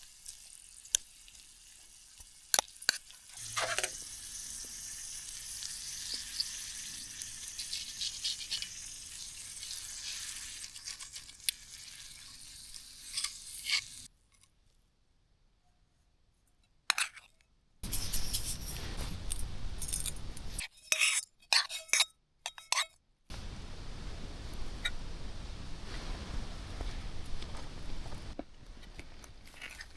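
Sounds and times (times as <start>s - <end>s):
food sizzling in a pan: 0.0s - 14.1s.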